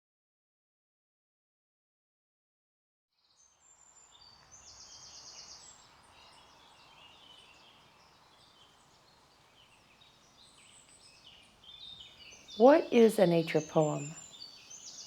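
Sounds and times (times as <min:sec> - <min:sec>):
songbirds chirping and trilling: 0:03.4 - 0:15.0
low background hiss: 0:03.6 - 0:15.0.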